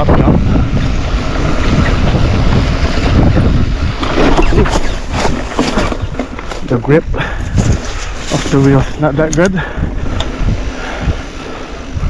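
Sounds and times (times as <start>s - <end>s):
mountain bike rumble and rattle: 0.0s - 12.0s
wind buffeting microphone: 0.0s - 12.0s
wheels knocking over bumps: 0.8s - 8.6s.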